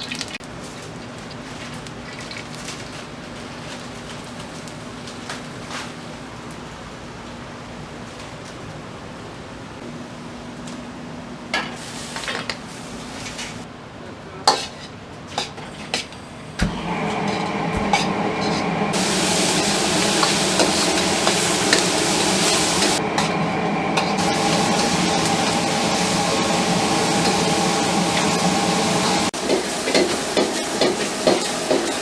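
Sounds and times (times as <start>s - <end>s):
food sizzling in frying: 0.0s - 5.2s, 14.5s - 32.0s
steady hum: 16.3s - 29.3s.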